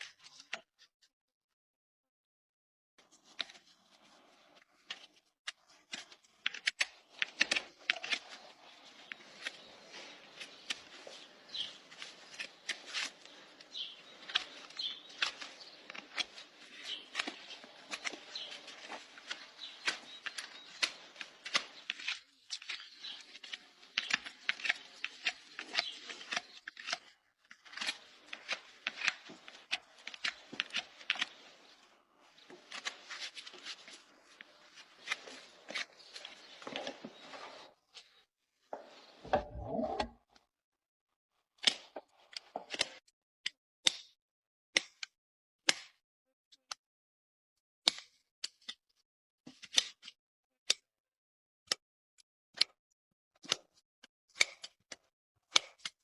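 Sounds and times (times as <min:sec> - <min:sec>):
hoof trimming clicks and scrapes: 0:04.8 - 0:37.8, 0:38.7 - 0:40.1.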